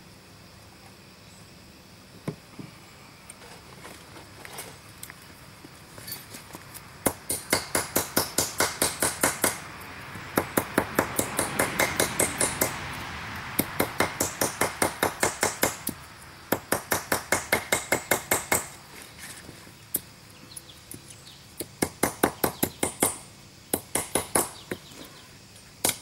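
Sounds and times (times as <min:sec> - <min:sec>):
hammer striking steel on anvil: 0:10.4 - 0:12.8.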